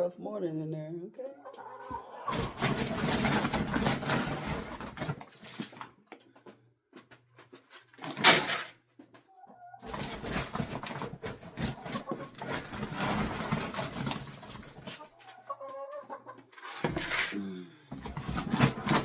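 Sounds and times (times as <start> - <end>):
hens clucking: 1.2 - 5.2, 9.1 - 17.2
rustling and shuffling: 2.3 - 15.5, 16.4 - 19.0.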